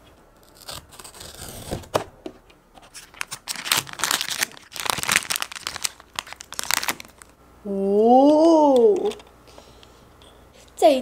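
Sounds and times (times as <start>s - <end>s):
packaging tearing and crinkling: 0.4s - 2.0s, 2.9s - 7.4s.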